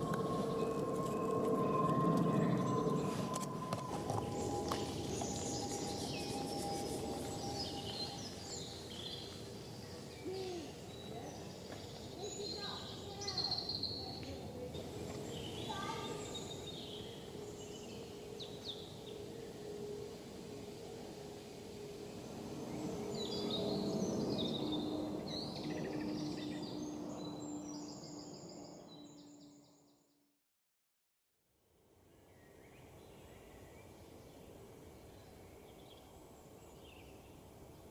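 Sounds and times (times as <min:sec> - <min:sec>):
steady low rumble: 0:00.0 - 0:09.8
jet airliner passing overhead: 0:00.0 - 0:11.3, 0:12.0 - 0:29.4
songbirds chirping and trilling: 0:00.0 - 0:29.9.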